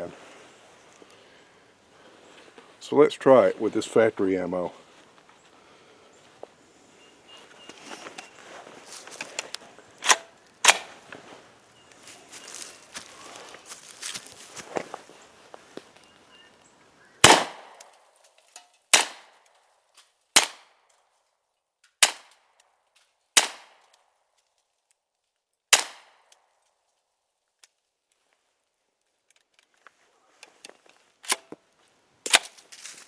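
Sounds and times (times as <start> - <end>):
gunshots: 17.2 - 17.8, 18.9 - 19.3.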